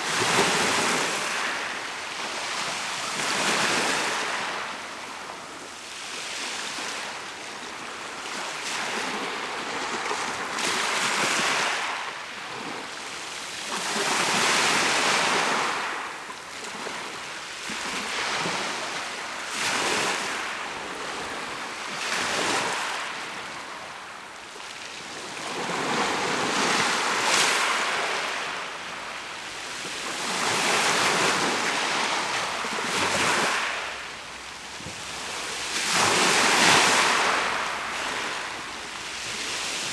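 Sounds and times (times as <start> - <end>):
sea waves breaking on shore: 25.0 - 39.9.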